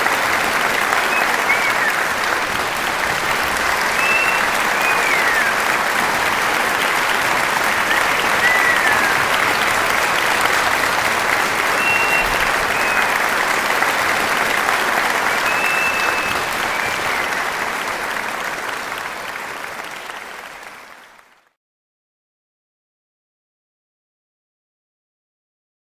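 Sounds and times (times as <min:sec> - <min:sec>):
crowd applause: 0:00.0 - 0:21.6
high whistles: 0:00.8 - 0:02.4, 0:03.0 - 0:13.5, 0:15.2 - 0:17.6.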